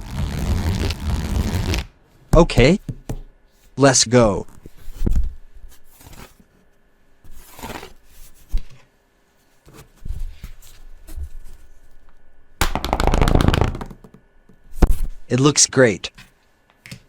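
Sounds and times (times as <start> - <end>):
pens tapping and knocking: 12.6 - 14.2.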